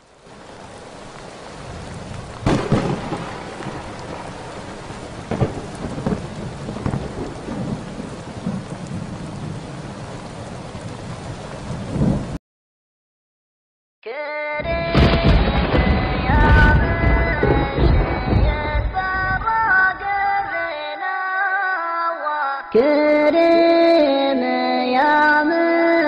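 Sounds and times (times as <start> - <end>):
heavy rain: 0.0 - 12.4, 14.6 - 20.8
thunder cracks and rumble: 1.6 - 10.0, 10.8 - 12.4, 14.7 - 20.1.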